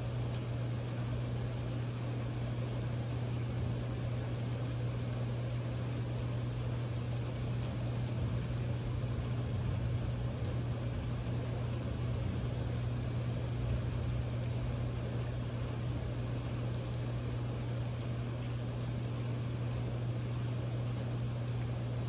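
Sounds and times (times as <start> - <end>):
rain hiss: 0.0 - 22.0
low hum: 7.3 - 18.8.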